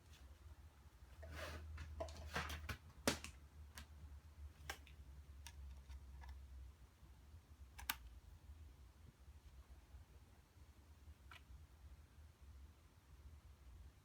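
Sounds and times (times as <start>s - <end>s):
sharp clicks: 7.8s - 8.1s.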